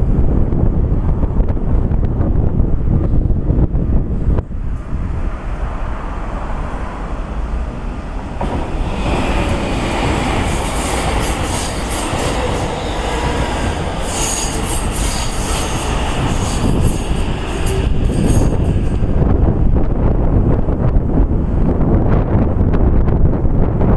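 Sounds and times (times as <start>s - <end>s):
train rumble: 0.0s - 23.9s
high-pitched wheel and rail noise: 4.4s - 20.1s
rapid clattering of train wheels: 7.8s - 20.0s.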